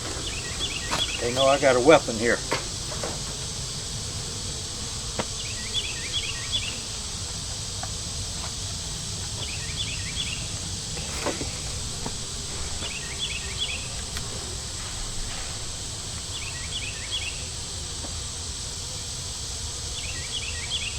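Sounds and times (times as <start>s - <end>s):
honey bees buzzing: 0.0s - 20.9s
bird chirping: 0.2s - 2.4s, 5.4s - 6.9s, 9.4s - 10.6s, 12.8s - 14.1s, 16.3s - 17.5s
light knocks: 5.1s - 5.4s.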